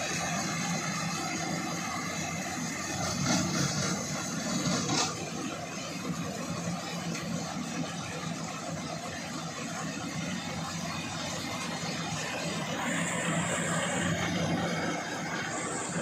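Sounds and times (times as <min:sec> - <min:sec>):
harvester engine running: 0:00.0 - 0:16.0.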